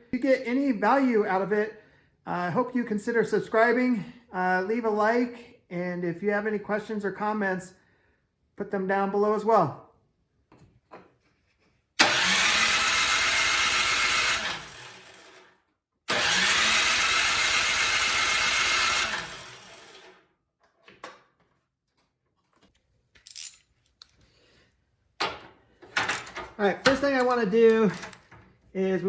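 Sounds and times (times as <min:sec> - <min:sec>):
snowblower engine cranking: 0:12.0 - 0:20.2.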